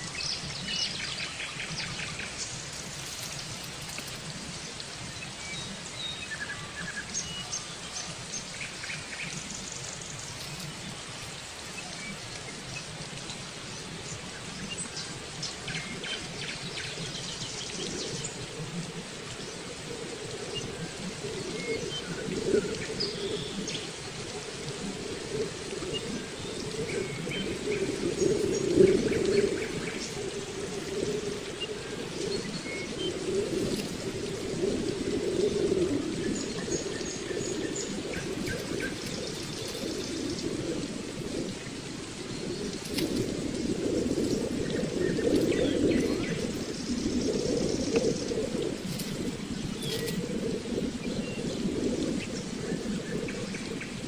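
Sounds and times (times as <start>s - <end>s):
steady rushing noise: 0.0s - 54.0s
small birds chirping: 25.9s - 40.4s, 42.2s - 51.5s.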